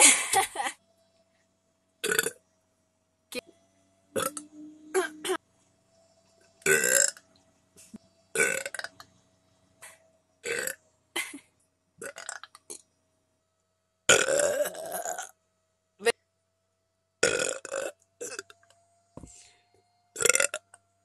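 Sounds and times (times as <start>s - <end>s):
woman burping: 0.0s - 0.6s, 2.0s - 2.4s, 4.2s - 5.4s, 14.1s - 15.3s.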